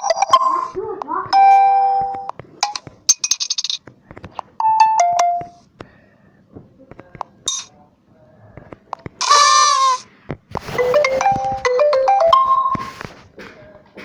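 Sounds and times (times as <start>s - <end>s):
phone notification tones: 0.0s - 3.6s, 4.6s - 5.6s, 10.6s - 13.0s.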